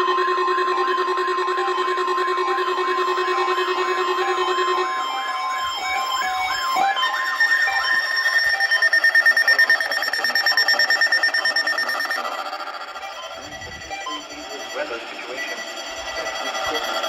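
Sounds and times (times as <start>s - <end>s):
steady warning tone: 0.0s - 17.0s
warbling siren: 0.0s - 17.0s
fast pulsing beep: 1.5s - 17.0s.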